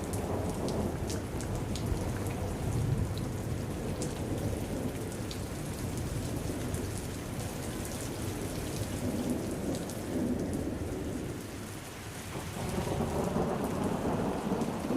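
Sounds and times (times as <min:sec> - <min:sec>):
hard rain pouring: 0:00.0 - 0:14.9
thunder rumbling: 0:12.3 - 0:14.9.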